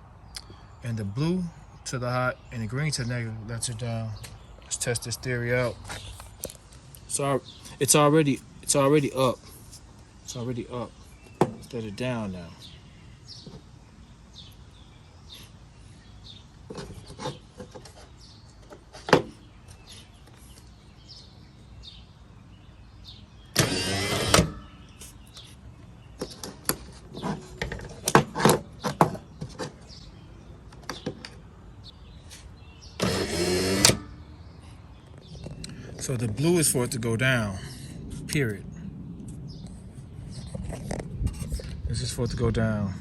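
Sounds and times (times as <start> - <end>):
headlight motor running: 23.5 - 24.7, 33.0 - 34.1.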